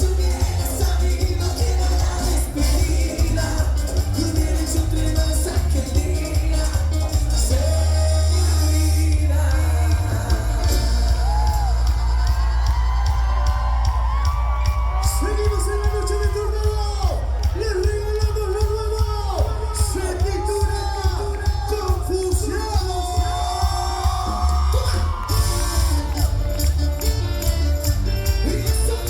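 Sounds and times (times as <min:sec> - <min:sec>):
person singing: 0:00.0 - 0:12.3
live latin band music: 0:00.0 - 0:29.0
shouts and whoops: 0:11.1 - 0:17.8, 0:22.6 - 0:26.6.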